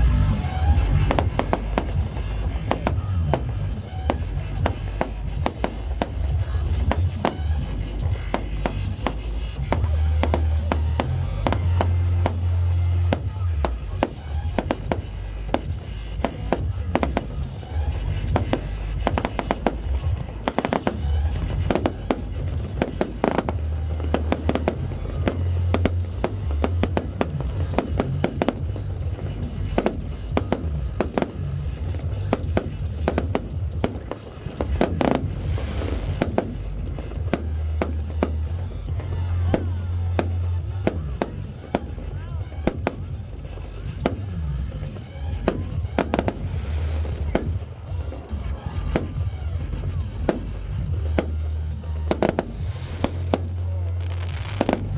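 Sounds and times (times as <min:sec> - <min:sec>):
fireworks bangs and crackling: 0:00.0 - 0:54.9
music with heavy bass beat: 0:00.0 - 0:54.9.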